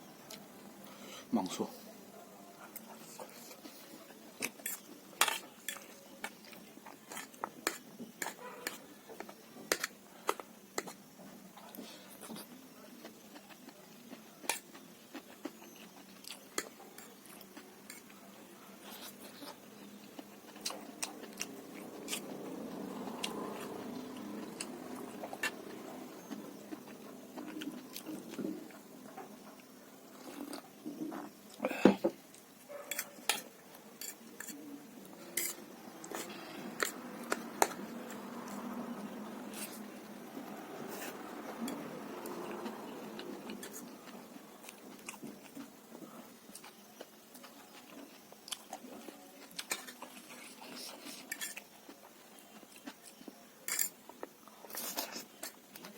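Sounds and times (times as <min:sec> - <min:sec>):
cutlery clicking against dishes: 0:04.6 - 0:05.8, 0:35.4 - 0:35.6, 0:53.7 - 0:54.0.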